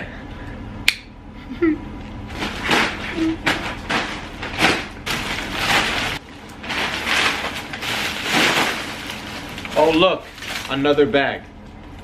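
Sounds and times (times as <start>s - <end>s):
packaging rustling and scraping: 2.3s - 10.8s.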